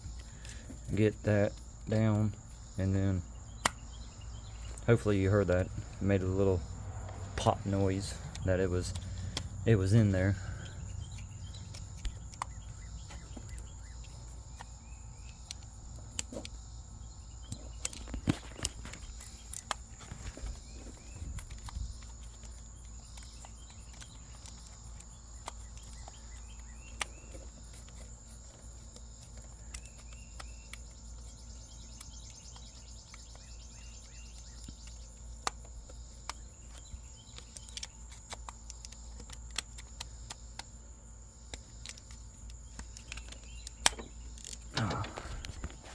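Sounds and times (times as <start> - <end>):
plastic connectors clicking: 17.4 - 40.8, 41.5 - 45.9.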